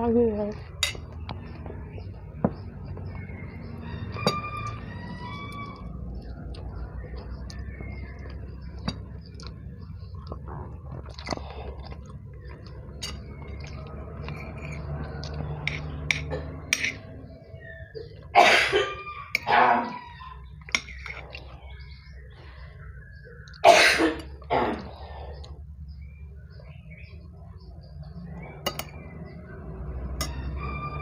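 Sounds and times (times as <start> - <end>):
person coughing: 18.4 - 18.9, 23.6 - 24.9.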